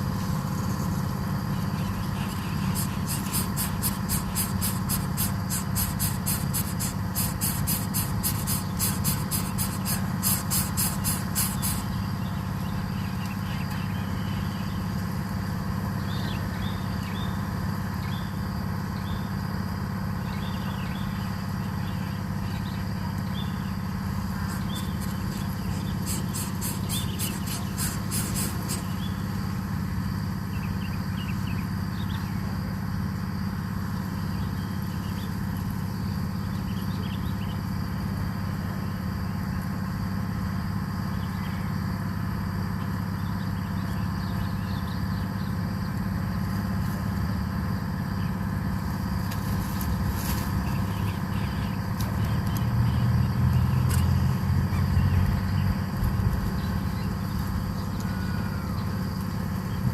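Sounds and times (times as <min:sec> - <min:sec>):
insect-like high pulsing: 0:00.0 - 0:59.9
faint bird chirps: 0:01.6 - 0:14.8, 0:20.2 - 0:29.3.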